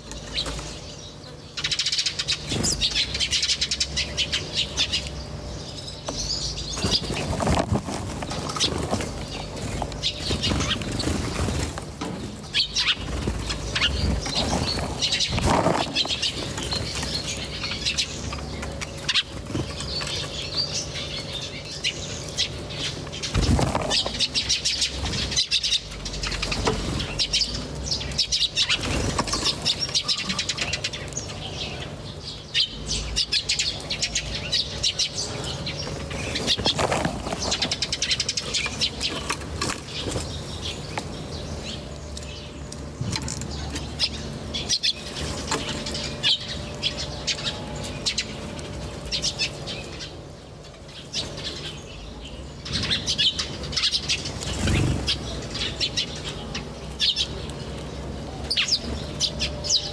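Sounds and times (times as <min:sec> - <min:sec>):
small birds chirping: 0:00.0 - 0:59.9
wings fluttering: 0:01.6 - 0:05.1, 0:06.2 - 0:31.2, 0:34.5 - 0:42.2, 0:52.8 - 0:56.3.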